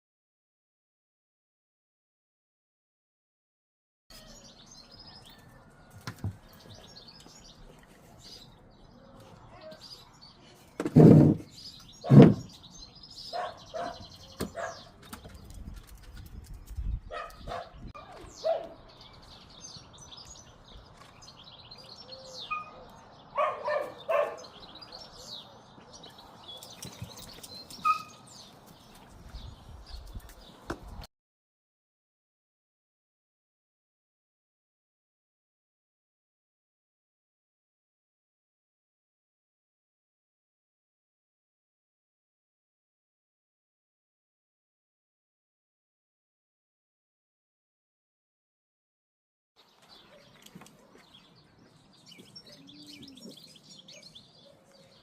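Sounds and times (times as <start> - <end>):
puppies yelping and squeaking: 27.8 - 28.2.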